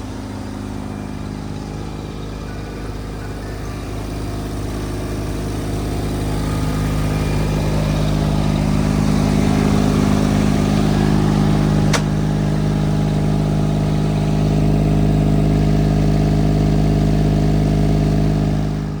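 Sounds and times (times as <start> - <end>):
diesel engine running: 0.0 - 19.0
sharp click: 11.9 - 12.2.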